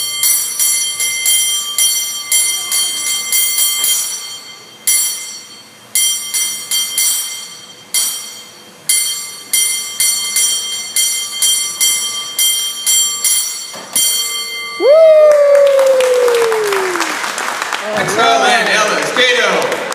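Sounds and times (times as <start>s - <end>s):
cable car bell ringing: 0.0s - 15.3s.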